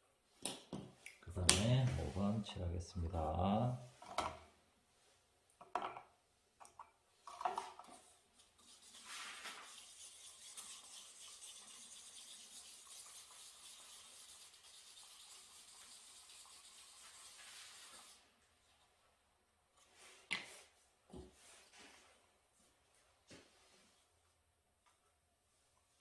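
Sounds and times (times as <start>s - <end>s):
paint brush swishing: 8.6s - 18.2s.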